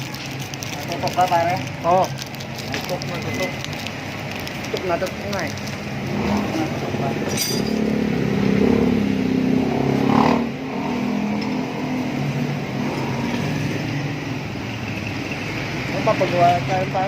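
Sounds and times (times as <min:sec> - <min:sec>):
motorcycle engine revving: 0:05.9 - 0:14.4.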